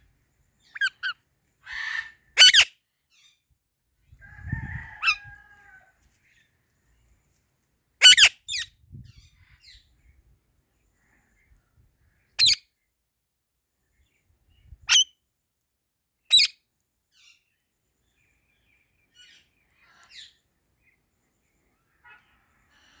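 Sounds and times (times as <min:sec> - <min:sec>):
parrot shrill screeches: 0:00.8 - 0:02.7, 0:08.0 - 0:08.6.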